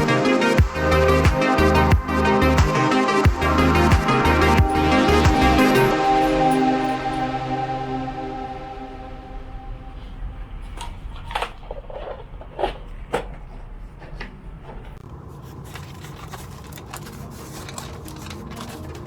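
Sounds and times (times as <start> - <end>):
low steady hum: 0.0 - 15.2.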